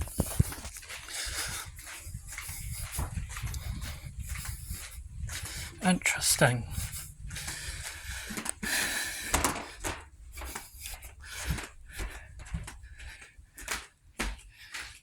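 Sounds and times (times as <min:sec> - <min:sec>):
irregular knocks and clicks: 0:07.4 - 0:14.9.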